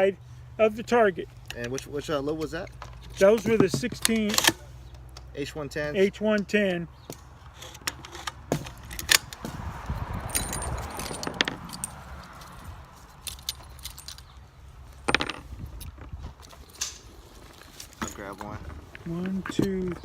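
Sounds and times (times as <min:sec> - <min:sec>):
rifle cartridges clinking: 0:02.7 - 0:05.2, 0:10.3 - 0:12.5, 0:13.2 - 0:14.3, 0:15.0 - 0:18.4
wind on microphone: 0:08.9 - 0:13.0, 0:15.4 - 0:16.4.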